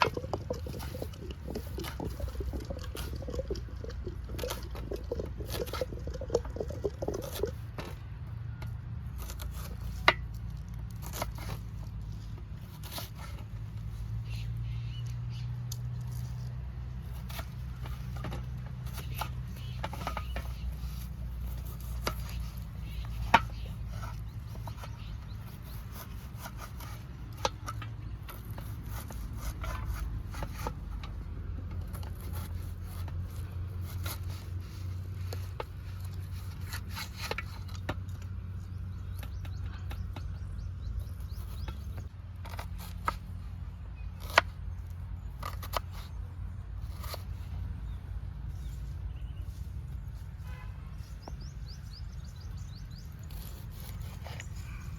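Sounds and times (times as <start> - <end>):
steady low rumble: 0.0 - 7.6
hands scraping and clicking: 0.0 - 14.4.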